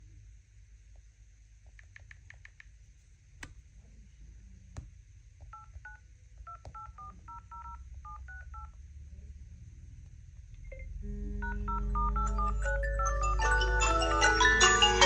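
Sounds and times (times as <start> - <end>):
phone keypad touch tones: 5.5 - 8.7, 10.7 - 13.0.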